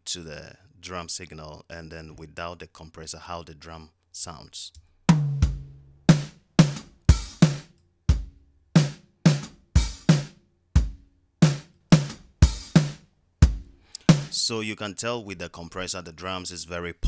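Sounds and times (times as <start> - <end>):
kick and snare drum hits: 5.1 - 14.4.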